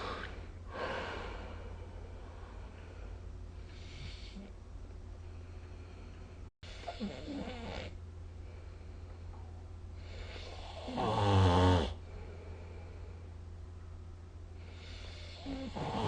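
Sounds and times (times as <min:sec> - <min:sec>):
steady low hum: 0:00.0 - 0:16.0
person snoring: 0:10.2 - 0:12.0, 0:14.8 - 0:16.0.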